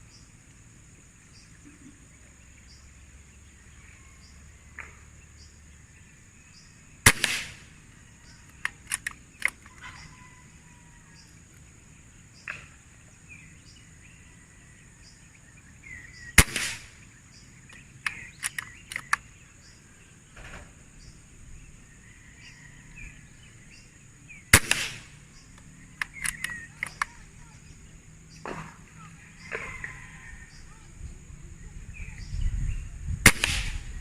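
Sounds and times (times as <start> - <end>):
steady high hiss: 0.0 - 34.0
air rifle shot crack: 7.0 - 7.8, 16.3 - 17.0, 24.5 - 25.2, 33.2 - 34.0
rifle action mechanical clicks: 8.5 - 9.8, 17.7 - 19.3, 24.6 - 27.2.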